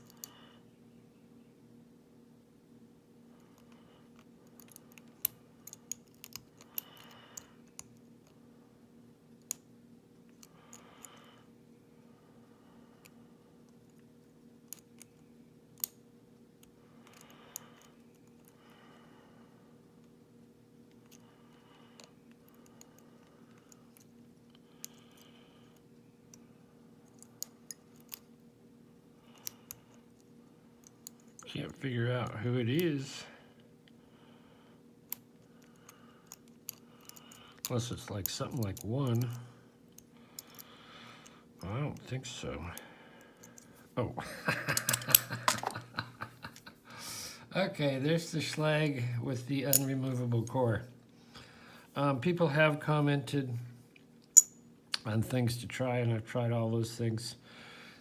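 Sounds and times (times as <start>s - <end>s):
lock picks clicking metallically: 0.0s - 0.4s, 3.5s - 8.4s, 27.0s - 28.3s, 35.1s - 40.8s, 44.7s - 45.8s, 49.5s - 50.6s, 54.3s - 54.6s
steady low hum: 0.0s - 58.0s.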